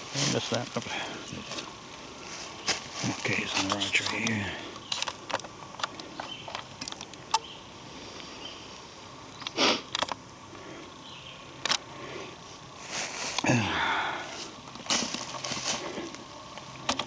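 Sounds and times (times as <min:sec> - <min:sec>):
footsteps through undergrowth: 0:00.0 - 0:06.8, 0:12.4 - 0:16.8
leaf crackles: 0:00.0 - 0:17.0.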